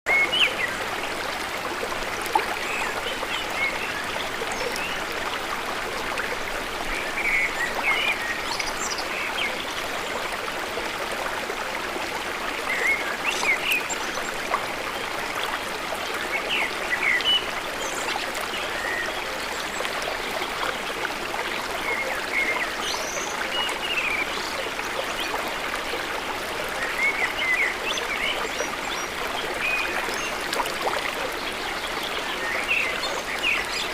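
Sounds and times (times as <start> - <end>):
running water rushing: 0.1 - 33.9.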